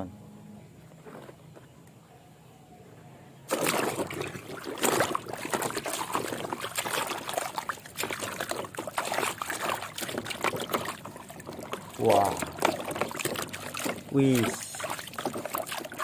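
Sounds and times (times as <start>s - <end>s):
water pouring and splashing: 3.5s - 16.0s.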